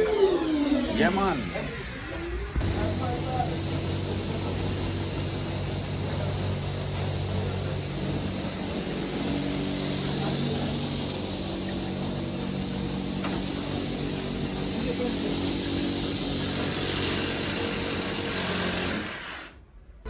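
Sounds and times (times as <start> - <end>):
mechanical drone with whine: 0.0 - 19.0.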